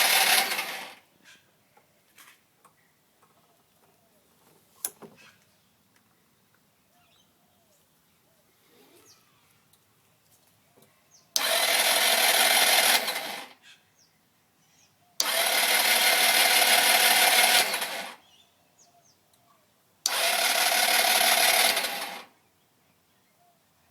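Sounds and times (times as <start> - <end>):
scooter starter cranking engine: 0.0 - 1.0, 11.3 - 13.6, 15.2 - 18.2, 20.1 - 22.4.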